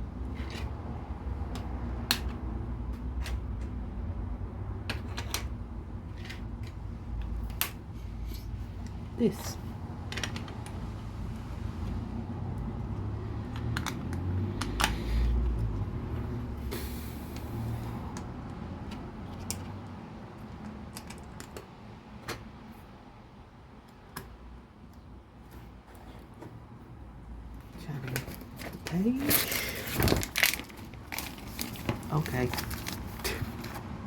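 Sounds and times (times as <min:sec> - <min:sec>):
handling noise: 0:27.9 - 0:34.0.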